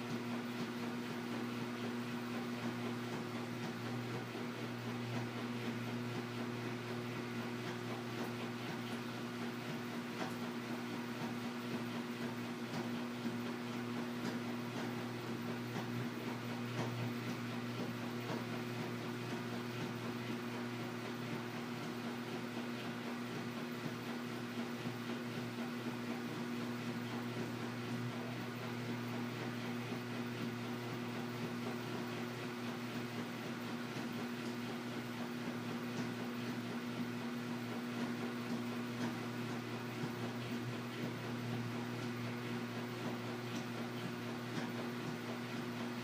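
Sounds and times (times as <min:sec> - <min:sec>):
washing machine running: 0:00.0 - 0:46.0.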